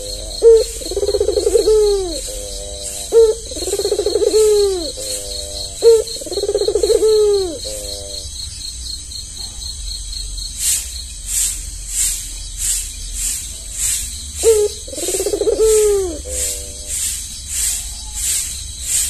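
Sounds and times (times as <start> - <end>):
dove cooing: 0.0 - 8.3, 14.4 - 17.1.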